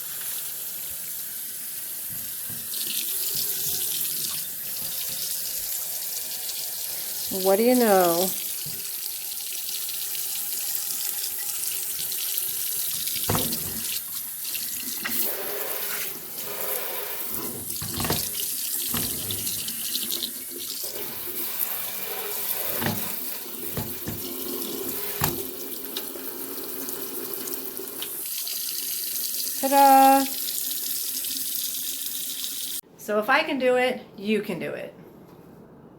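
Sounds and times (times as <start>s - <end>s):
water running from faucet into sink: 0.0s - 32.8s
pipe knocks and clicks: 23.8s - 24.3s.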